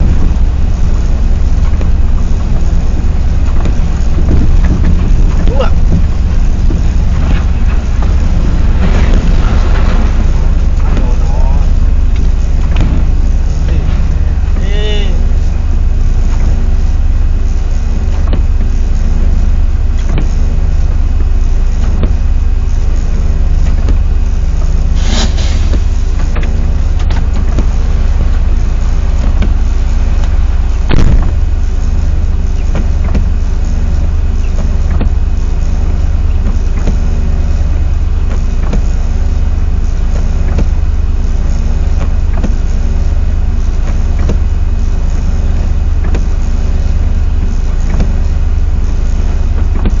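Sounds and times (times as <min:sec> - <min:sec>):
road noise: 0:00.0 - 0:50.0
truck engine drone: 0:00.0 - 0:50.0
short hiss: 0:24.9 - 0:26.3.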